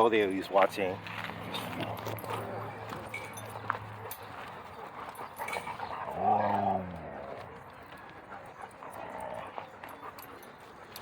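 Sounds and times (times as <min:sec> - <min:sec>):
dog howling call: 0:06.0 - 0:07.0.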